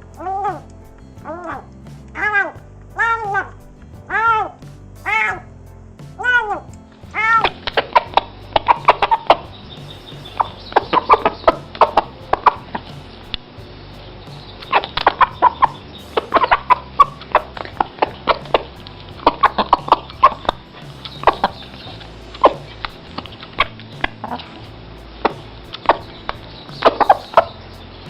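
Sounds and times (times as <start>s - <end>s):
pet eating noisily: 7.2s - 13.0s, 14.6s - 27.9s.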